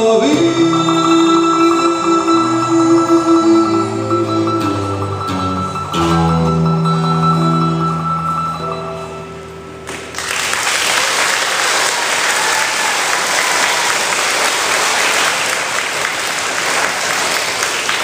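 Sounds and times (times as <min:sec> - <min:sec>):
children applauding: 0:09.9 - 0:18.0.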